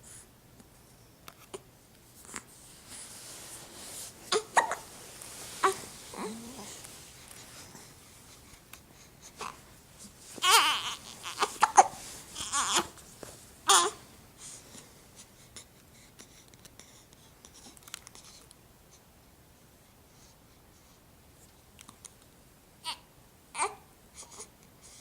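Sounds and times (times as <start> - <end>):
baby crying and babbling: 10.4 - 13.0, 13.7 - 14.0, 22.8 - 24.5.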